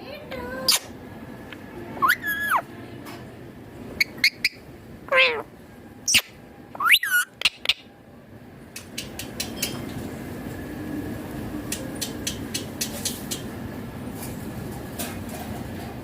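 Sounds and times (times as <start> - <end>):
parakeet calls and chirps: 2.0 - 2.7, 4.0 - 7.9.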